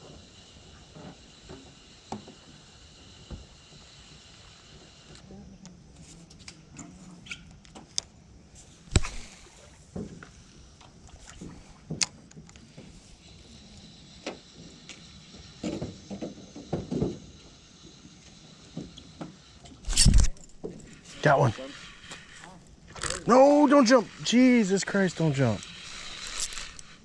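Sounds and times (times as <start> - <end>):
fishing gear knocks and clicks: 19.9 - 21.0, 25.8 - 27.0.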